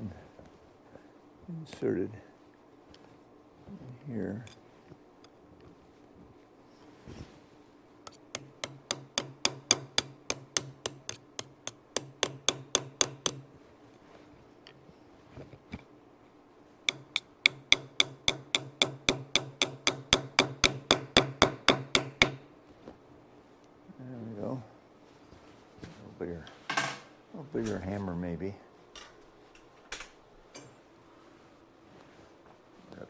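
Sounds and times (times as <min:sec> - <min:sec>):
small hammer tapping metal pin: 0:08.1 - 0:13.5, 0:16.9 - 0:22.4.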